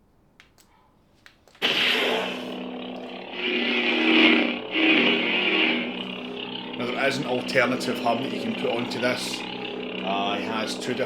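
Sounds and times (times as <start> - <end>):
faint clicks: 0.4 - 1.6
lightsaber igniting and humming: 1.6 - 11.0.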